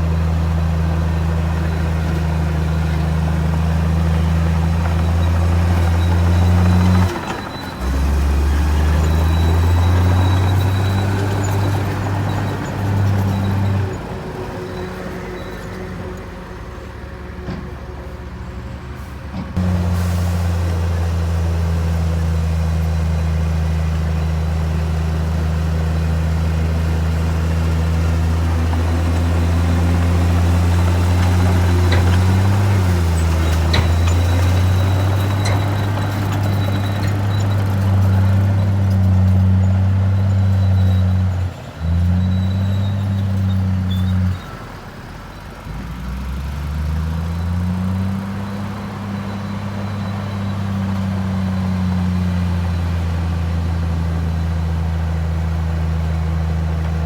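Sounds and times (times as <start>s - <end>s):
bulldozer diesel engine revving: 0.0s - 57.0s.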